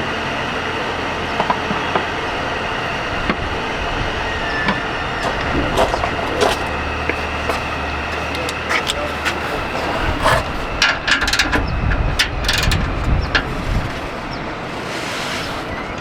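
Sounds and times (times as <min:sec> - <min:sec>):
steady background noise: 0:00.0 - 0:16.0
hand tools clicking on metal: 0:05.2 - 0:11.5.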